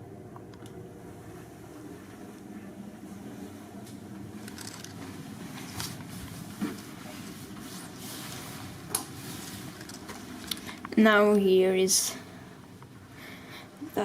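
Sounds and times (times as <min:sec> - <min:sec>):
low room hum: 0:00.0 - 0:14.0
soft clicks and rustles: 0:03.8 - 0:11.1.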